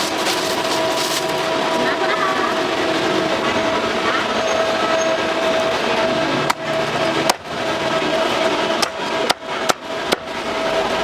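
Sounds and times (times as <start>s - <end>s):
street din: 0.0s - 11.0s.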